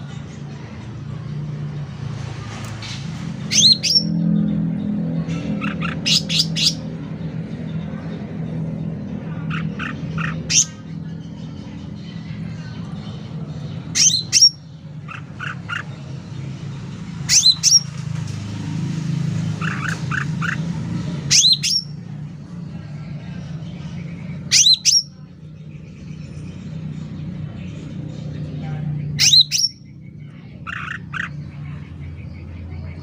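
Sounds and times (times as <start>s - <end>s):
bird calling loudly: 30.6s - 31.5s.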